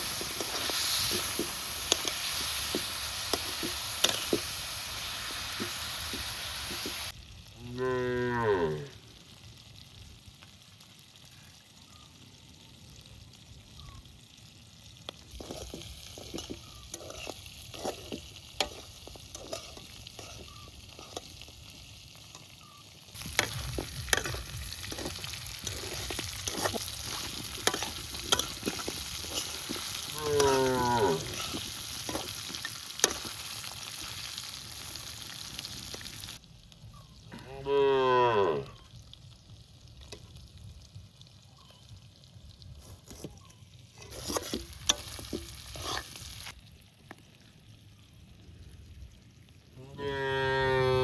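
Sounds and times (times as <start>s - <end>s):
spoon scraping a pan: 0.0s - 7.1s, 15.3s - 21.5s, 22.3s - 34.4s, 42.8s - 46.5s
curry sizzling in a pan: 0.0s - 51.0s
cow mooing: 7.6s - 9.0s, 30.1s - 31.4s, 37.3s - 38.8s, 49.8s - 51.0s.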